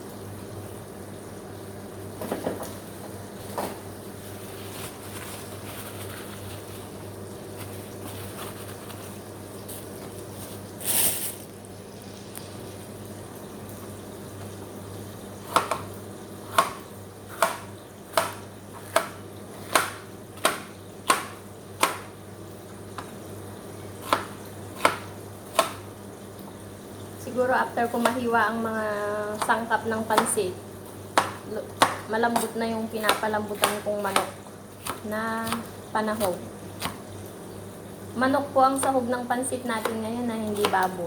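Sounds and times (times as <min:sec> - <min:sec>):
knife chopping on cutting board: 0:15.5 - 0:15.9, 0:16.5 - 0:22.1, 0:24.0 - 0:25.8, 0:31.1 - 0:37.0.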